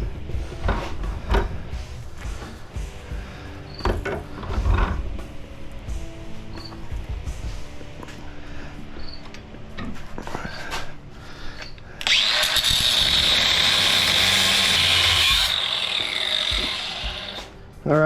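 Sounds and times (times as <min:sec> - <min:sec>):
reciprocating saw cutting metal: 0:12.0 - 0:17.6.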